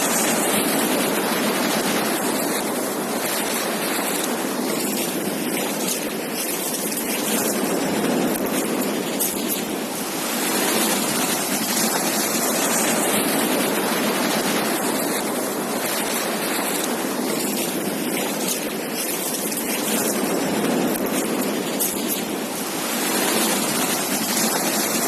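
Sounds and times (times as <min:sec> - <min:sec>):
ocean waves breaking on beach: 0:00.0 - 0:25.0.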